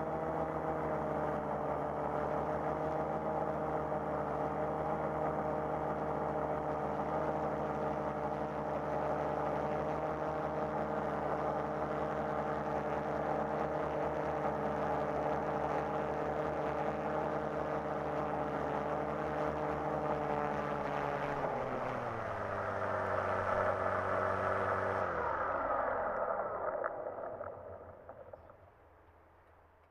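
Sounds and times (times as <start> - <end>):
drone motors whining: 19.8 - 28.7.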